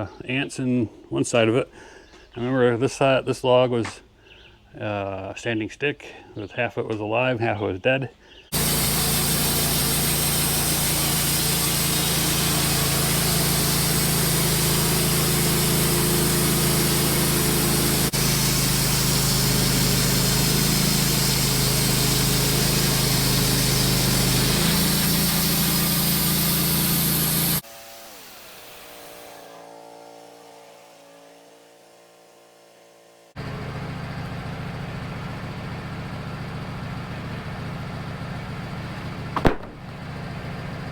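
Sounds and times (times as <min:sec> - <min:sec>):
engine idling: 0:08.5 - 0:27.6, 0:33.4 - 0:40.9
band sawmill cutting a log: 0:08.5 - 0:40.9.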